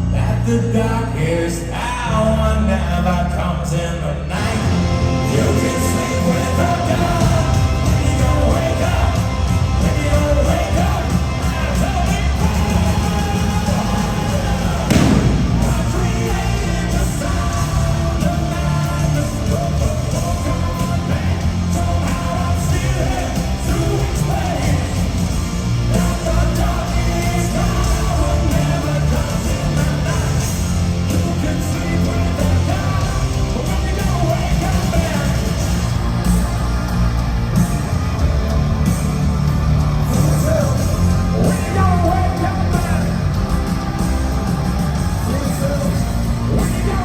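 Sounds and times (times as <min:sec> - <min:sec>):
live hard rock band: 0:04.2 - 0:47.0.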